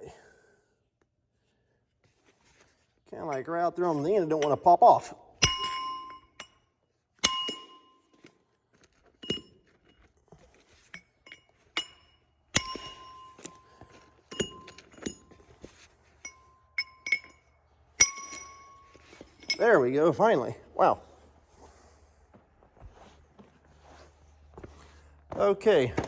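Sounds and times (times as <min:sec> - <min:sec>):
metal-on-metal strikes ringing: 0:05.4 - 0:06.5, 0:07.2 - 0:08.0, 0:11.3 - 0:13.6, 0:18.0 - 0:18.9.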